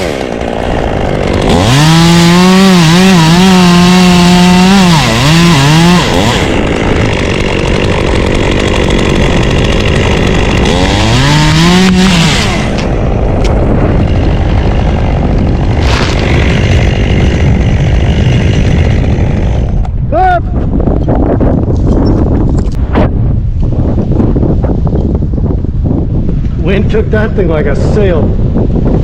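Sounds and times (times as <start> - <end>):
chainsaw running at full throttle: 0.0 - 20.0
wind buffeting microphone: 0.1 - 29.0.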